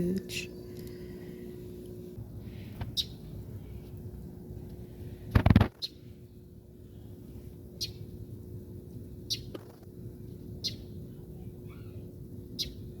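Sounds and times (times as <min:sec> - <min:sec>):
low background hum: 0:00.0 - 0:13.0
bird chirping: 0:03.0 - 0:03.2, 0:12.6 - 0:12.8.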